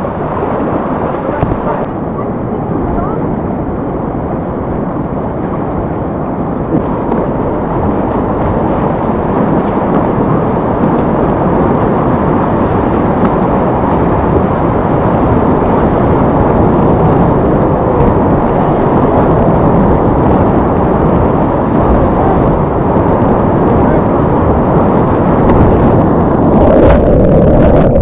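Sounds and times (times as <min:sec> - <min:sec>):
rushing river rapids: 0:00.0 - 0:25.8.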